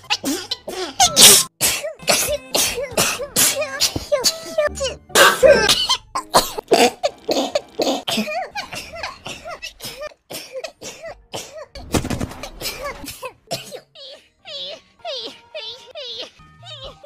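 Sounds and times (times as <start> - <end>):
young women sneezing: 1.0 - 4.0, 5.2 - 5.8.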